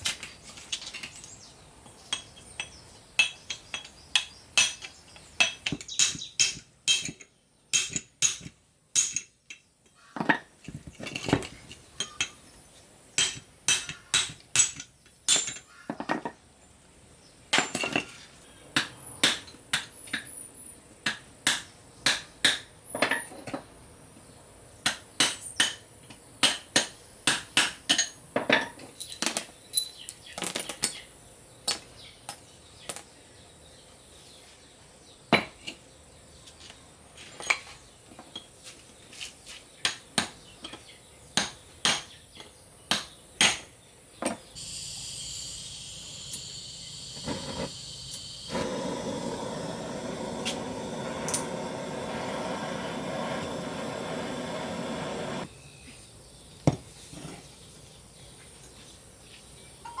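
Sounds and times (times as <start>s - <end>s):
metal tools clinking on steel: 0.5s - 9.7s, 10.6s - 12.5s, 28.0s - 31.0s.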